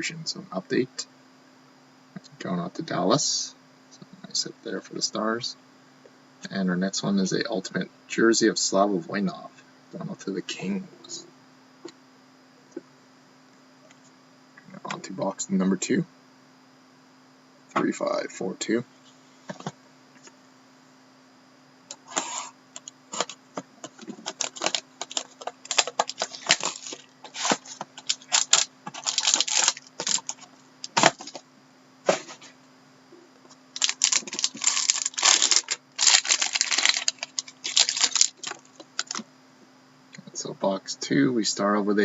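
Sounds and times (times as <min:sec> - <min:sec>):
wrapper crinkling and tearing: 0:22.0 - 0:31.4, 0:33.7 - 0:39.2.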